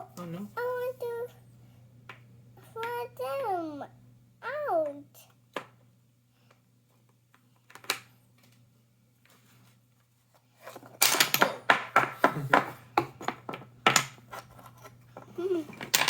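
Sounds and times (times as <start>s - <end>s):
puzzle pieces clattering: 15.7s - 16.0s.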